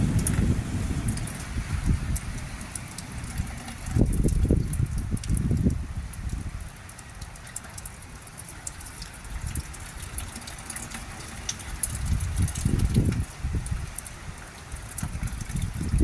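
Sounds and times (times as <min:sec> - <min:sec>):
wind buffeting microphone: 0:00.0 - 0:06.9, 0:09.2 - 0:10.4, 0:11.6 - 0:16.0
steady rain: 0:00.0 - 0:16.0.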